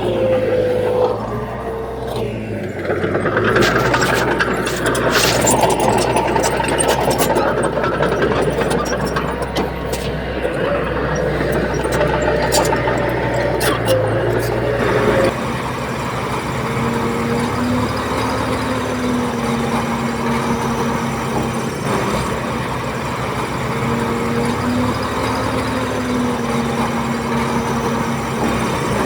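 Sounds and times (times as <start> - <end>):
machine whine: 0.0 - 22.4
heavy diesel engine drone: 0.0 - 29.0.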